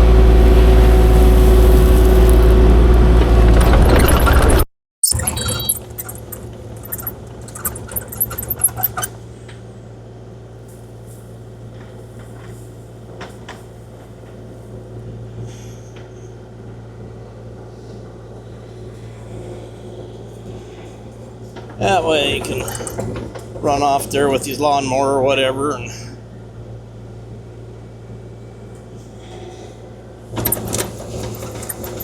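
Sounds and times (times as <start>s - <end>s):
diesel engine running: 0.0s - 4.6s
clicks and rattles: 3.2s - 9.2s, 22.3s - 23.4s, 30.4s - 32.0s.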